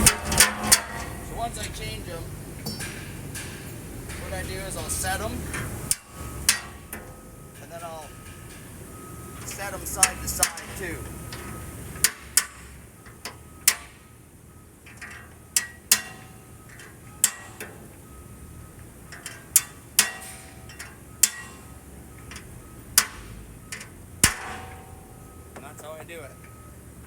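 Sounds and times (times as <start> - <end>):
metallic hammer taps: 2.6 - 4.9.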